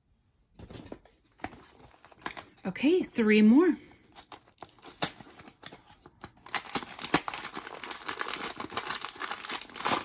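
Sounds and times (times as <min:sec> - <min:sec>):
packaging clicks and rustles: 0:04.0 - 0:10.0
packaging crinkling: 0:04.1 - 0:10.0.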